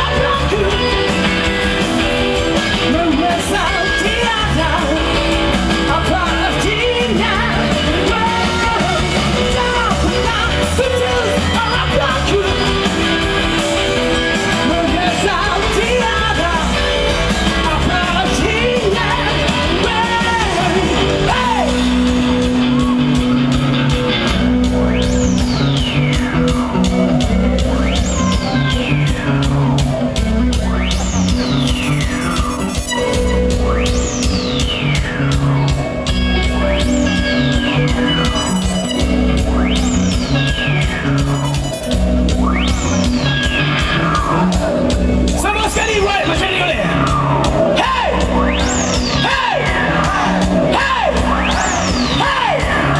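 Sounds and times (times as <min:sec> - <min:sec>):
person singing: 0:00.0 - 0:01.6, 0:02.7 - 0:13.1, 0:14.5 - 0:22.2
rock band playing: 0:00.0 - 0:52.9.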